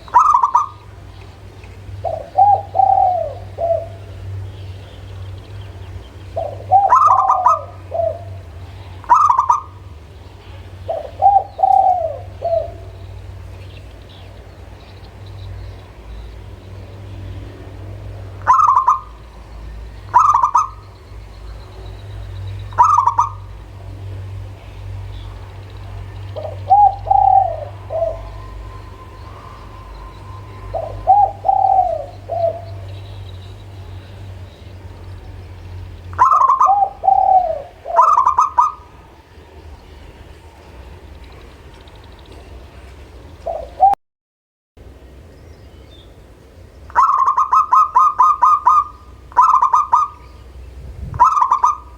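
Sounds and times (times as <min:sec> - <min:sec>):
dove cooing: 0:00.0 - 0:05.1, 0:06.2 - 0:14.7, 0:18.3 - 0:21.1, 0:22.6 - 0:24.0, 0:25.8 - 0:34.2, 0:36.1 - 0:39.2, 0:43.4 - 0:44.0, 0:46.9 - 0:50.3, 0:51.0 - 0:51.9
steady low hum: 0:00.0 - 0:36.2.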